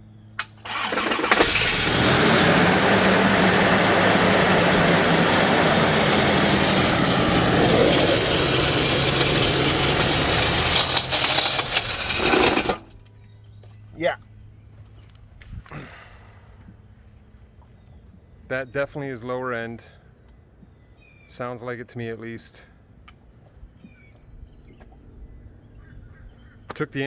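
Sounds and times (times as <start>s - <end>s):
car engine starting and running: 0.4s - 13.0s.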